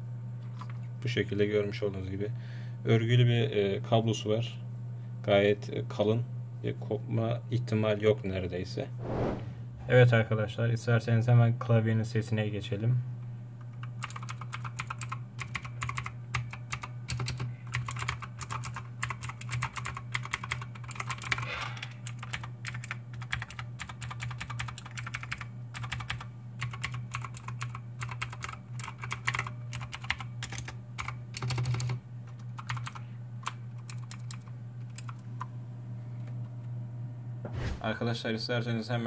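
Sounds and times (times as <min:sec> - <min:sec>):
steady low hum: 0:00.0 - 0:14.0, 0:14.8 - 0:39.0
mechanical keyboard typing clicks: 0:13.8 - 0:21.4, 0:22.0 - 0:32.0, 0:32.6 - 0:35.2.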